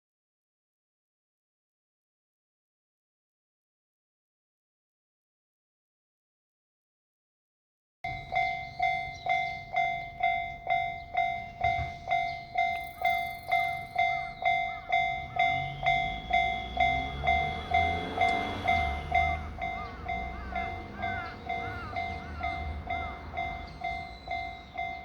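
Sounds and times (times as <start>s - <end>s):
level crossing warning bell: 8.1s - 25.0s
passing train rumble: 8.1s - 25.0s.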